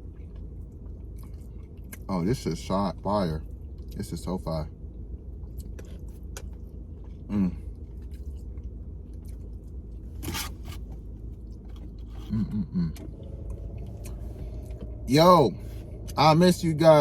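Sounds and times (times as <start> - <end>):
close-up chewing with mouth clicks: 5.4 - 10.0
short hum: 12.2 - 17.0.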